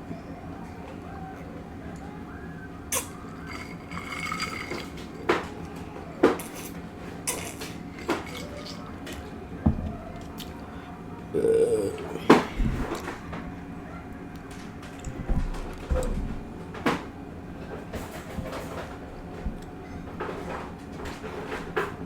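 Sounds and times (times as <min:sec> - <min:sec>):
utensils scraping a plate: 0:03.0 - 0:09.3
short wavering voice-like sound: 0:11.3 - 0:12.3.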